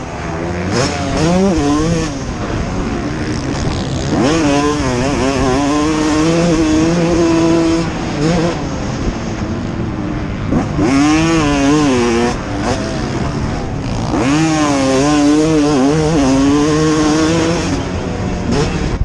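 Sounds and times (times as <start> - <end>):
motocross bike engine revving: 0.0 - 19.0.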